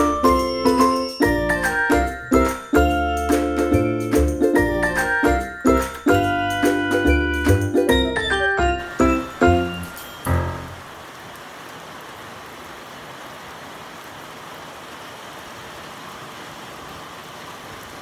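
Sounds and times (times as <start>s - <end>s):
background music: 0.0s - 10.8s
steady rain falling: 0.0s - 18.0s.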